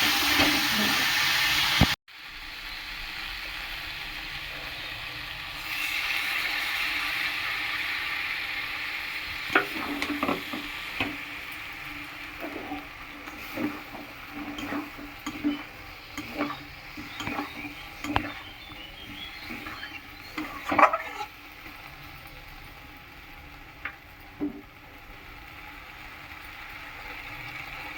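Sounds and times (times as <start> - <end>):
curry sizzling in a pan: 0.0 - 27.9
spoon scraping and knocking pan: 9.4 - 21.4, 23.8 - 24.7.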